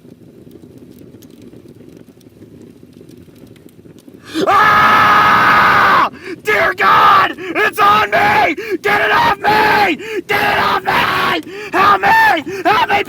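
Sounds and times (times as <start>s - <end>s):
man screaming in pain: 4.3s - 13.0s.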